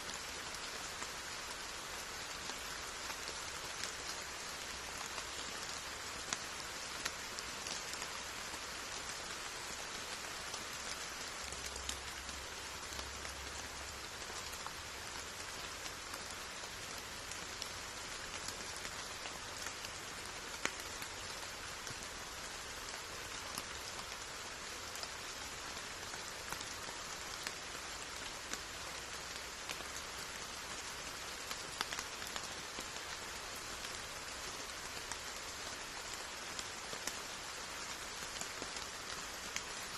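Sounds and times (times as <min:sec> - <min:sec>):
steady rain hiss: 0:00.0 - 0:39.9
raindrops ticking: 0:10.8 - 0:22.3, 0:26.0 - 0:39.8.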